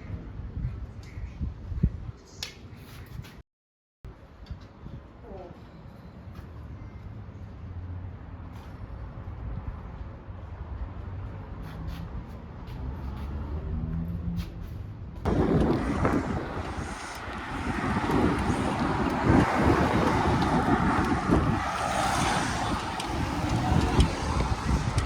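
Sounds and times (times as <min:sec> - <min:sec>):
wind buffeting microphone: 0:00.0 - 0:03.4, 0:14.5 - 0:25.0
road traffic noise: 0:04.1 - 0:25.0.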